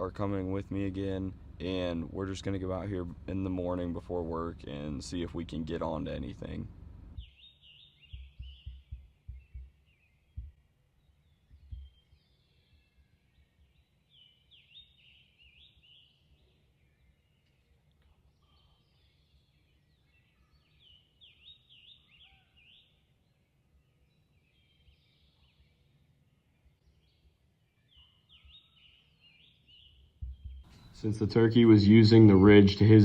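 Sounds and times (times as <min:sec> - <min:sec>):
low steady rumble: 0:00.0 - 0:07.4, 0:30.2 - 0:33.0
faint songbird song: 0:00.0 - 0:33.0.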